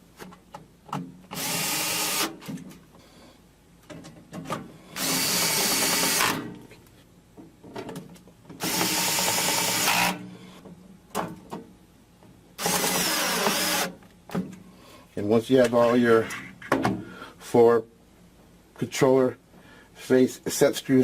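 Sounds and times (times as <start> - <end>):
drill driver running: 1.3 - 2.4, 4.9 - 6.4, 8.6 - 10.2, 12.6 - 13.9.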